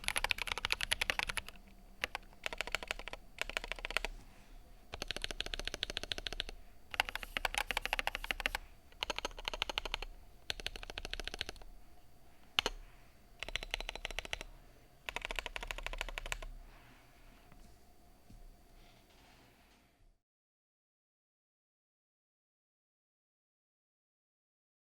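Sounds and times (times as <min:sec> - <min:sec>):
mechanical keyboard typing: 0:00.0 - 0:04.1, 0:04.9 - 0:11.7, 0:12.5 - 0:12.8, 0:13.4 - 0:14.5, 0:15.1 - 0:16.5.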